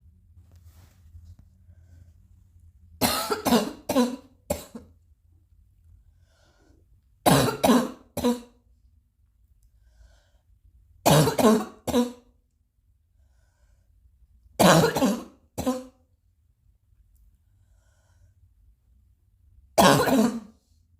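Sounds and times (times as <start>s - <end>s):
person coughing: 3.0s - 4.9s, 7.2s - 8.6s, 11.1s - 12.3s, 14.6s - 16.0s, 19.8s - 20.6s.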